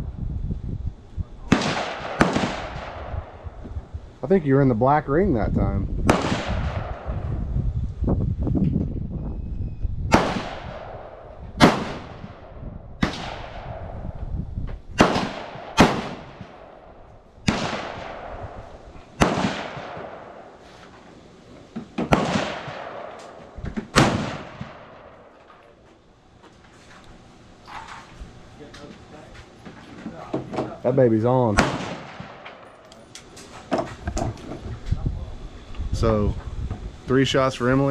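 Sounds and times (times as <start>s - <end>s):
rifle gunshots with echo: 1.4s - 3.6s, 6.0s - 7.4s, 10.1s - 14.2s, 15.0s - 20.6s, 22.0s - 25.5s, 31.4s - 32.9s.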